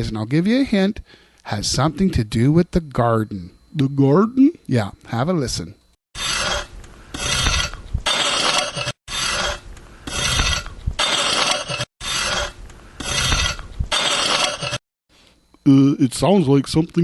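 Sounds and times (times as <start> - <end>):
garden hoe scraping soil: 6.2 - 14.8.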